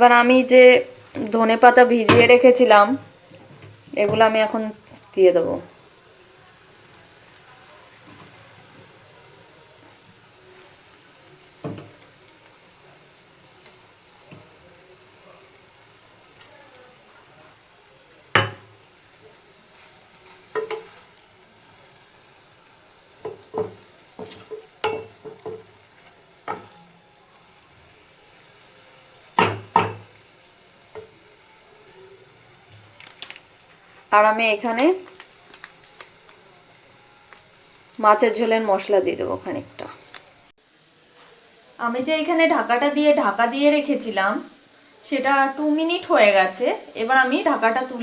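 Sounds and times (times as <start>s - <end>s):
food sizzling in a pan: 0.0s - 48.0s
utensil knocking against pan: 29.4s - 30.1s.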